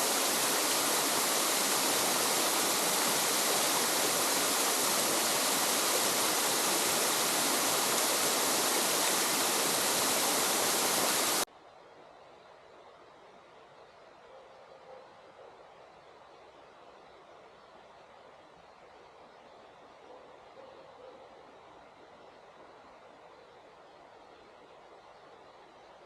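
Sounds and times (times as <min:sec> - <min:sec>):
waterfall rushing: 0:00.0 - 0:11.5
faint hiss: 0:00.0 - 0:26.0.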